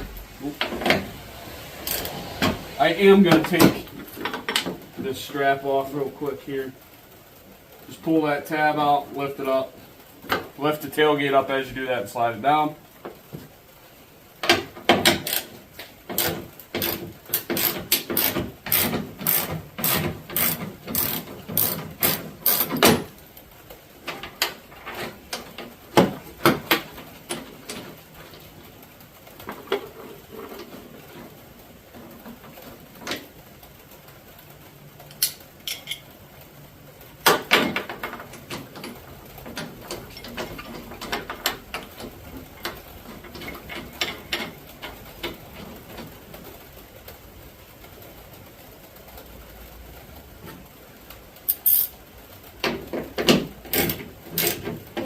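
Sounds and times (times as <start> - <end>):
ratchet wrench clicking: 1.8 - 2.2, 15.2 - 15.5, 16.2 - 23.0, 51.5 - 52.0, 53.7 - 54.6
tools and metal parts clinking: 35.1 - 36.1, 37.3 - 45.7.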